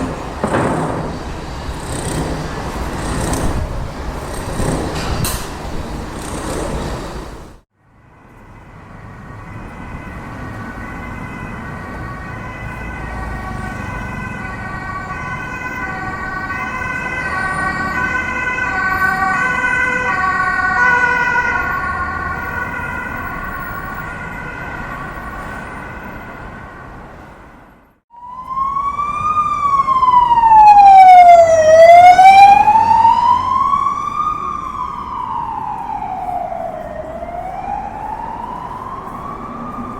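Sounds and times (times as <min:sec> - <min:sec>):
wailing siren: 0:00.0 - 0:05.0, 0:07.9 - 0:27.0, 0:28.1 - 0:39.9
two-tone siren: 0:07.8 - 0:27.0, 0:28.1 - 0:39.9.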